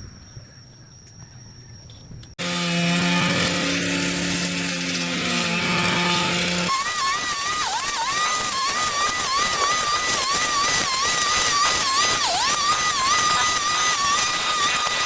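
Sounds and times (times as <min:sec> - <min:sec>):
two-stroke power tool engine: 0:02.4 - 0:15.0.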